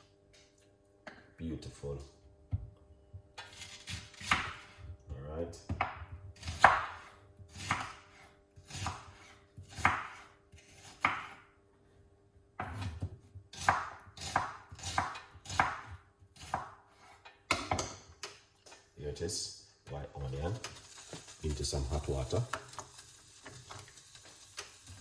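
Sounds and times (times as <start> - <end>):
knife chopping onion on board: 3.4 - 4.8, 5.6 - 11.4, 12.6 - 18.2.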